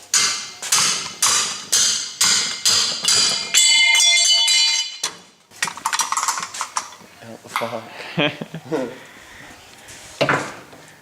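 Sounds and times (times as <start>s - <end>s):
hammer striking metal strut: 0.1s - 5.2s
metallic ringing: 1.9s - 5.3s.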